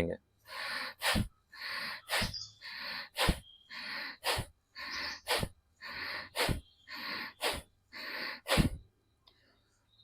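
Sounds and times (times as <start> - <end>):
forceful breathing through nose: 0.5 - 8.8.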